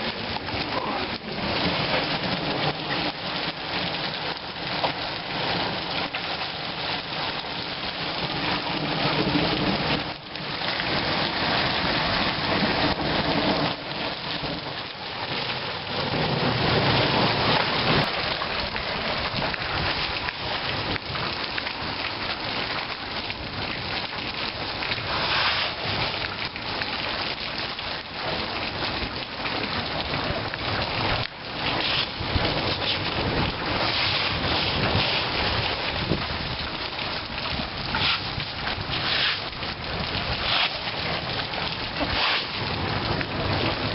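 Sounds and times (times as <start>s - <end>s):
hail and heavy rain: 0.0s - 43.9s
low rumbles: 28.3s - 43.9s.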